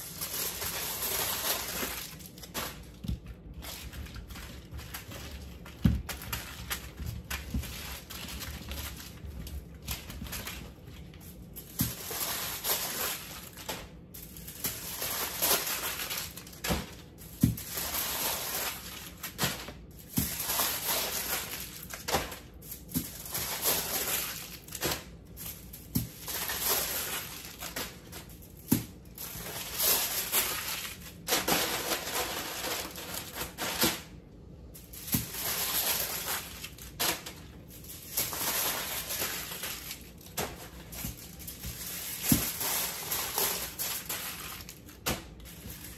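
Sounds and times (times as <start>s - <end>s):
aluminium foil crinkling: 0.0s - 45.9s.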